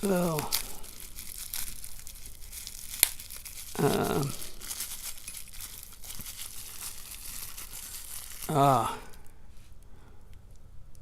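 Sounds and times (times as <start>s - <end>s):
person humming: 0.0s - 0.6s, 3.7s - 4.6s, 8.4s - 9.2s
packaging wrapper crinkling and tearing: 0.0s - 9.4s.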